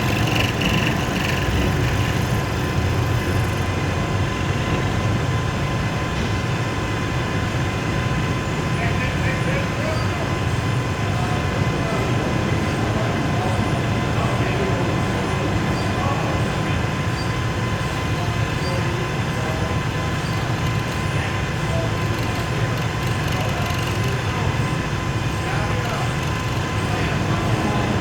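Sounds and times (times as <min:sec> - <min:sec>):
lathe motor drone: 0:00.0 - 0:04.3, 0:17.6 - 0:28.0
thin steady whine: 0:00.0 - 0:05.2, 0:14.5 - 0:28.0.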